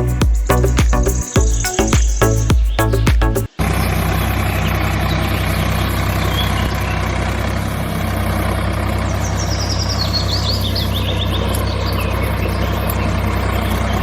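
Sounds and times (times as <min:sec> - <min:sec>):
short high chirps: 0:00.0 - 0:03.6.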